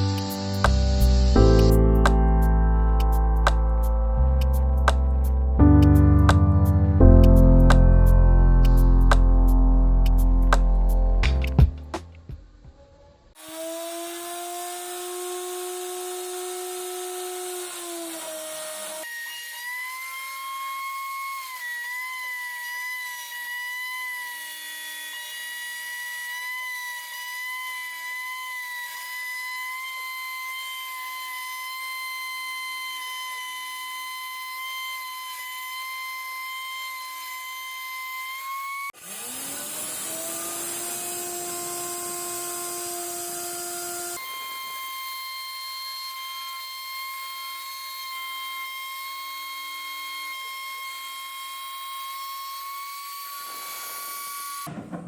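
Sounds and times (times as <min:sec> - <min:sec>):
hiss of cutting wood: 0:00.0 - 0:01.8, 0:13.4 - 0:54.7
wood router spindle whining: 0:13.4 - 0:54.7.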